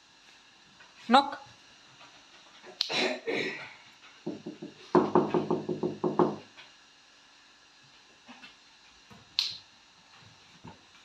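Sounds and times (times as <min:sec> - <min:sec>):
parrot knocking beak on door: 0:04.2 - 0:06.5
sharp click: 0:09.4 - 0:09.6.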